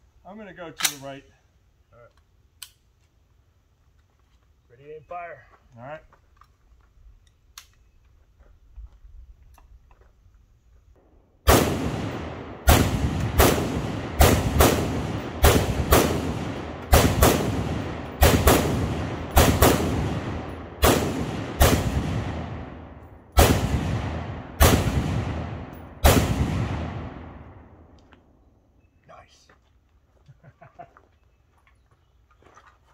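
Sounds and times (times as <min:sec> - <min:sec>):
rifle shots with ringing echo: 0:11.0 - 0:28.0.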